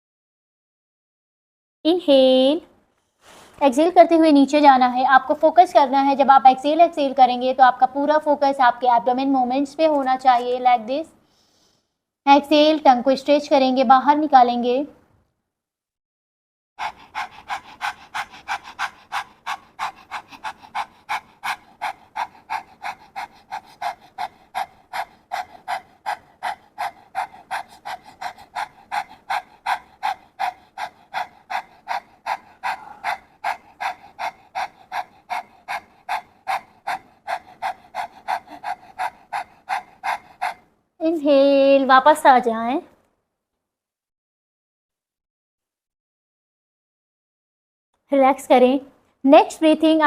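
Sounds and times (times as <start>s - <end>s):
woman panting rapidly: 16.8s - 40.7s.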